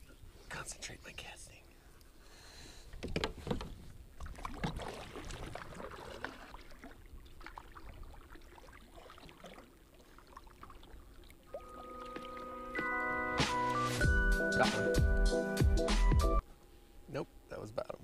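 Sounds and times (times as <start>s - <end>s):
paddle strokes through water: 3.0s - 13.1s.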